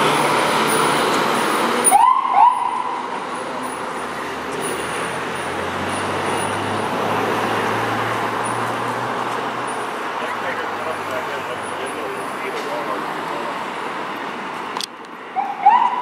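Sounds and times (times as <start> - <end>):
road traffic noise: 0.0 - 16.0
rising siren chirp: 1.8 - 3.1, 15.4 - 16.0.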